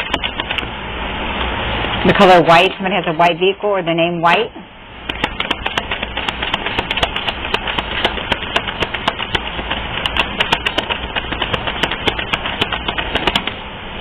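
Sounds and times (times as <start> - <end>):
cards being shuffled: 5.1 - 13.6.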